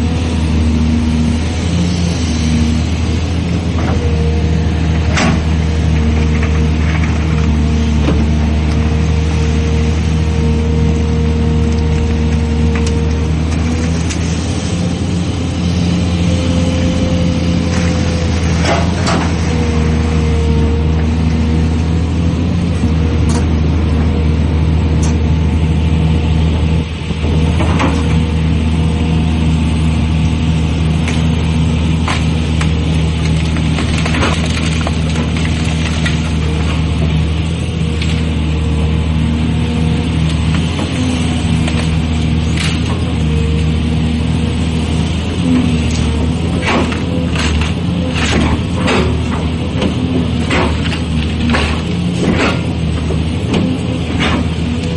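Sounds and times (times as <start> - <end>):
excavator diesel engine running: 0.0 - 54.9
sharp knocks and cracks: 32.0 - 36.8, 45.8 - 54.6.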